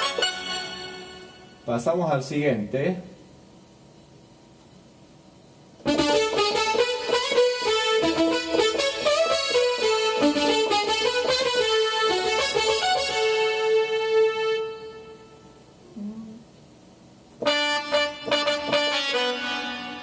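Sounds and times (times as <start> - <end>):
synthesizer keyboard phrase: 17.4 - 20.0.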